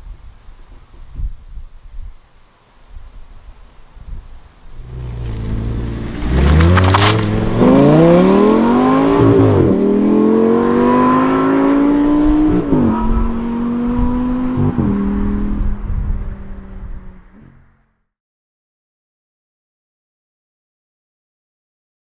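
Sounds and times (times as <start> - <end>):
car engine accelerating hard: 4.8 - 17.8.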